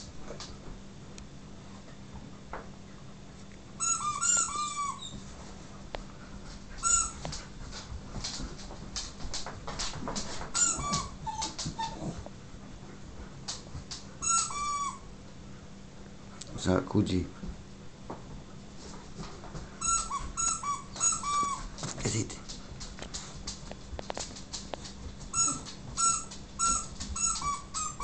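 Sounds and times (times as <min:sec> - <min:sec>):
squeaky toy squeaks: 0:03.8 - 0:05.2, 0:06.8 - 0:07.2, 0:10.6 - 0:12.0, 0:14.2 - 0:15.0, 0:19.8 - 0:21.6, 0:25.3 - 0:28.0.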